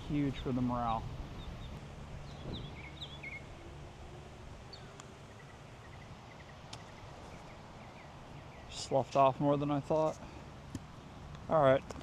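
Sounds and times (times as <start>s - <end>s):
wind rumble on microphone: 0.0s - 4.9s.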